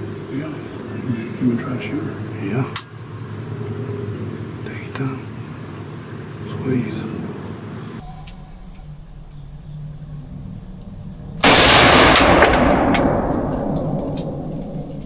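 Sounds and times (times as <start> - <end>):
rifle shot with echo: 11.4 - 15.0.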